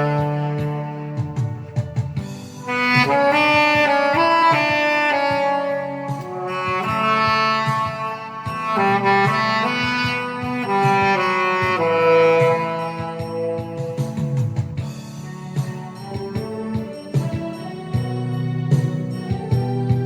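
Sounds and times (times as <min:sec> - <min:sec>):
saxophone melody: 0:00.0 - 0:14.9
backing track: 0:00.0 - 0:20.0.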